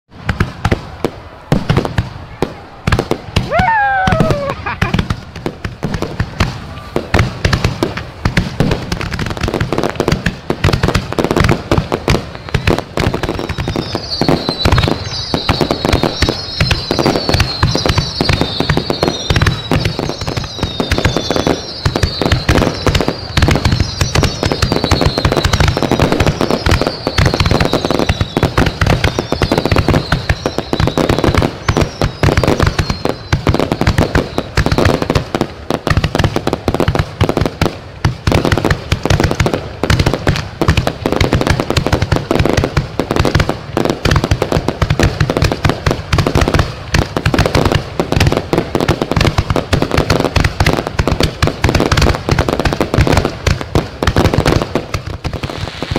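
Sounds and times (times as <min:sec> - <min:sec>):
fireworks bangs and crackles: 0:00.1 - 0:55.9
falling firework whistles: 0:03.4 - 0:05.1, 0:12.2 - 0:35.2, 0:55.4 - 0:55.9.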